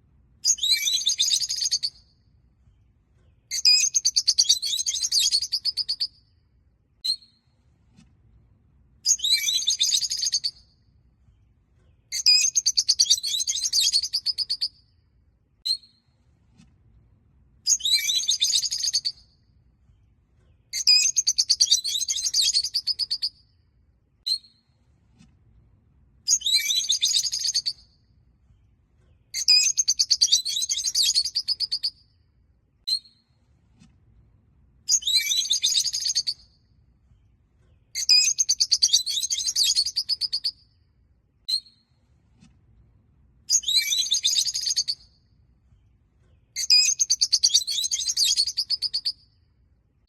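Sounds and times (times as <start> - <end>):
sharp bird chirps: 0.4 - 2.0, 3.5 - 6.1, 9.1 - 10.6, 12.1 - 14.8, 17.7 - 19.2, 20.8 - 23.3, 29.4 - 32.0, 34.9 - 36.5, 38.0 - 40.6, 43.5 - 45.1, 46.6 - 49.2.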